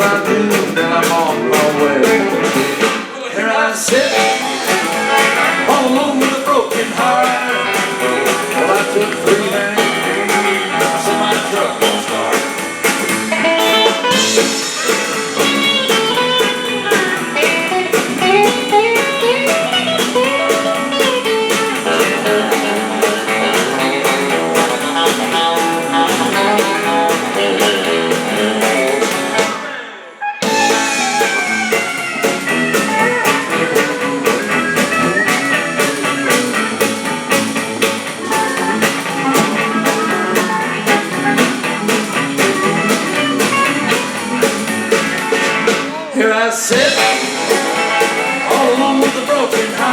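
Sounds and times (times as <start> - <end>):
drum beat: 0.0 - 3.0, 3.9 - 29.7, 30.4 - 46.1, 46.7 - 49.9
country band playing: 0.0 - 49.9
lead guitar with gliding notes: 12.6 - 45.8.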